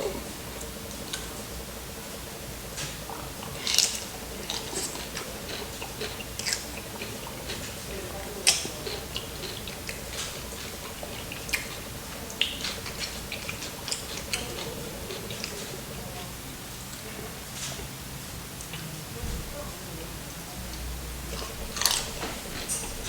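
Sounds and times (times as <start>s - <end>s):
wet chewing and mouth clicks: 2.7s - 17.0s, 20.7s - 23.0s
sharp food crunch: 3.6s - 15.9s.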